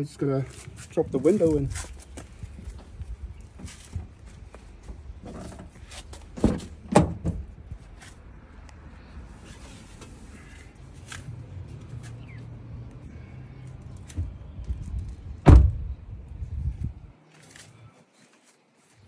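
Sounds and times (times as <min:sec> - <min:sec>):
window glass and door clunks: 0:02.5 - 0:07.5, 0:15.4 - 0:15.9.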